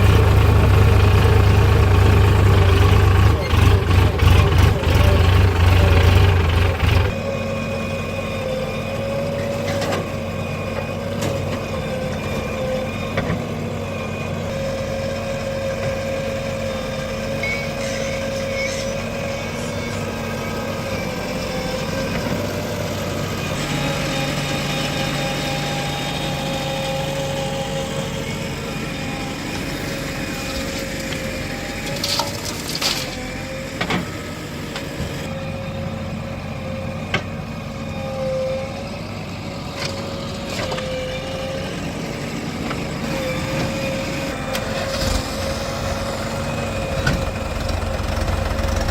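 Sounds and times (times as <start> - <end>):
diesel engine running: 0.0 - 48.9.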